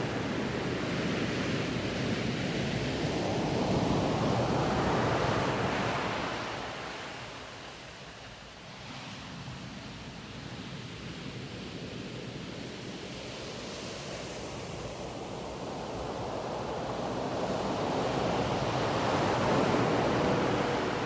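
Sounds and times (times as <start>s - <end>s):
ocean waves washing: 15.4s - 21.0s.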